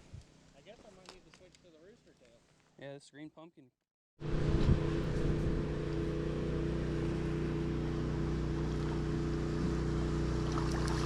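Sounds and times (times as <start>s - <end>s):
motor running steadily: 4.2s - 11.0s.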